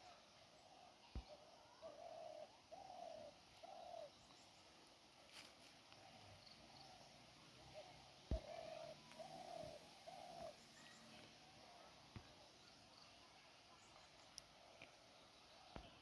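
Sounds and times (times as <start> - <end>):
bird hooting: 1.8 - 4.1, 7.8 - 10.6.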